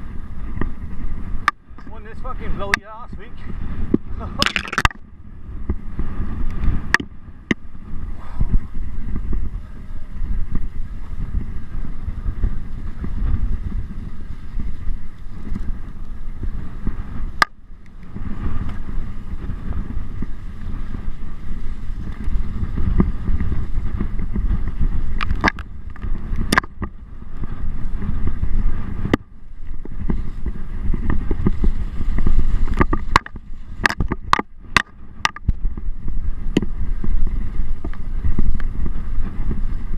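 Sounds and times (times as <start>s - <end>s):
mountain bike rattling: 0.0s - 39.9s
sharp knocks and clicks: 25.2s - 26.9s, 32.7s - 35.6s.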